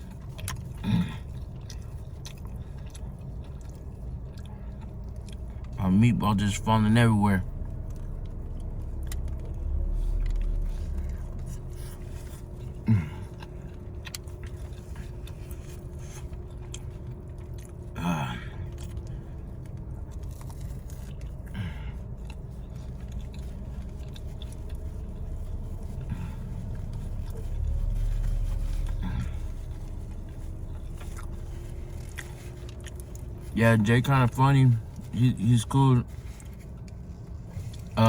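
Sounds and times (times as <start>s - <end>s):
person chewing: 0.0s - 5.8s, 7.5s - 33.6s
steady low hum: 0.0s - 38.0s.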